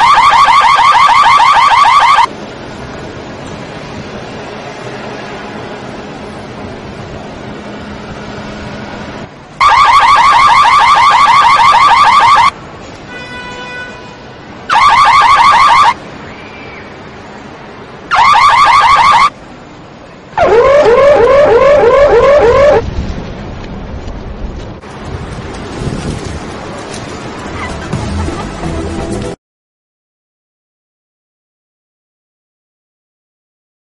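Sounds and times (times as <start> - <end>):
car alarm chirping tones: 0.0 - 2.3, 9.6 - 12.5, 14.7 - 16.9, 18.1 - 19.3, 20.4 - 22.8
car alarm whooping tone: 0.0 - 2.3, 9.6 - 12.5, 14.7 - 16.0, 18.1 - 19.3, 20.4 - 22.8.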